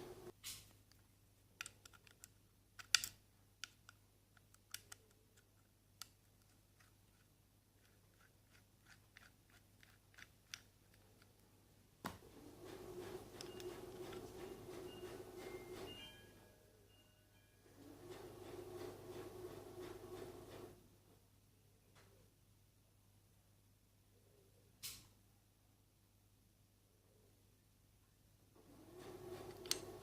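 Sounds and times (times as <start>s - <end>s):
steady hum: 0.0s - 0.4s
door lock hardware clicking: 1.6s - 6.2s.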